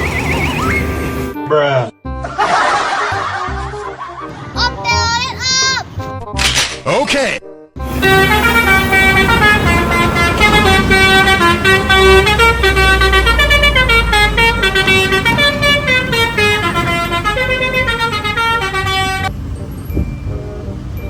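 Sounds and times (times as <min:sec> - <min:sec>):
low engine rumble: 0:00.0 - 0:01.4, 0:07.8 - 0:21.0
musical horn playing a tune: 0:07.8 - 0:19.3.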